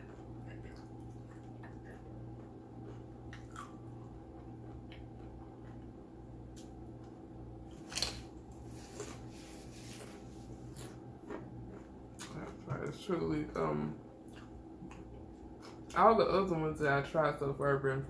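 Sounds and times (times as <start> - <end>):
person chewing food: 0.0 - 12.6, 14.2 - 15.9.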